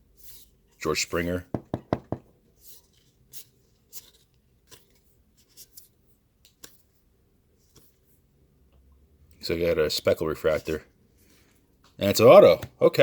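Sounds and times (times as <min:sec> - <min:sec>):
cards swishing and rubbing: 0:00.0 - 0:01.2, 0:02.4 - 0:08.2.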